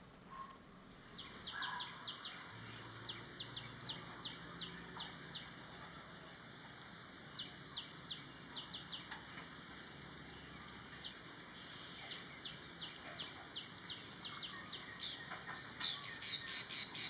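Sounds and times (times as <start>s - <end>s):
small bird chirping: 0.3s - 5.5s, 10.2s - 17.0s.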